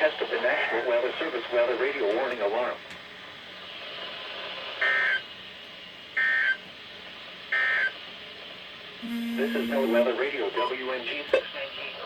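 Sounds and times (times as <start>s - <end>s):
digital data tone bursts: 9.0s - 10.1s.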